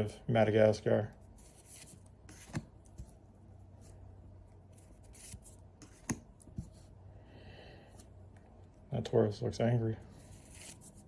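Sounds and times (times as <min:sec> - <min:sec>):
trading cards sliding: 0:01.3 - 0:03.1, 0:04.7 - 0:06.8, 0:10.2 - 0:11.0.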